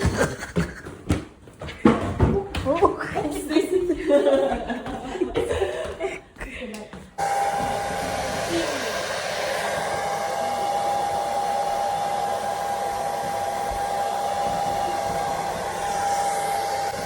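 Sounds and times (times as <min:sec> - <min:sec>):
hair dryer running: 0:07.2 - 0:17.0.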